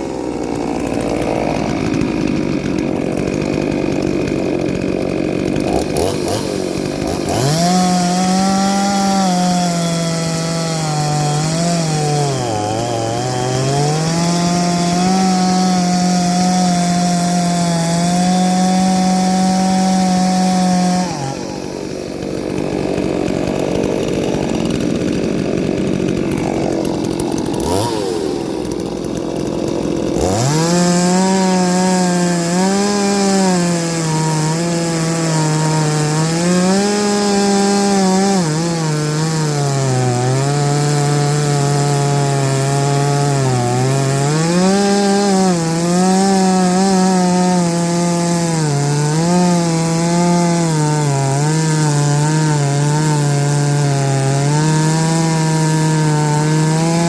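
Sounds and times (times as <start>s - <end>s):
chainsaw cutting wood: 0.0s - 57.0s
dense rasping noise: 16.3s - 32.9s.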